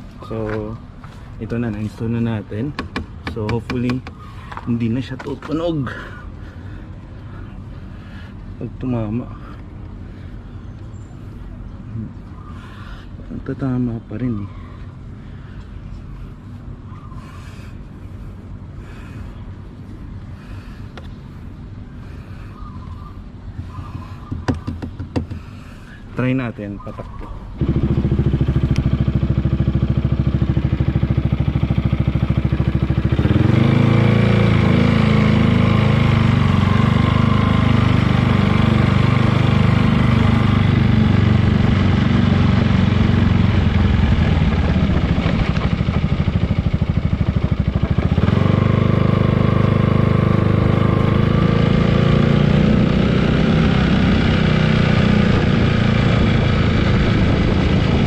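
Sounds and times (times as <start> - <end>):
scooter engine idling and revving: 0.0 - 6.2, 20.2 - 25.6, 27.4 - 58.0.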